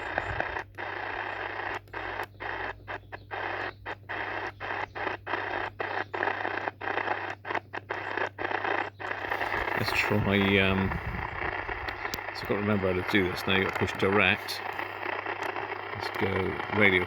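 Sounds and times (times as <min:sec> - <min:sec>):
radio static and hiss: 0:00.0 - 0:17.0
low hum: 0:08.7 - 0:17.0.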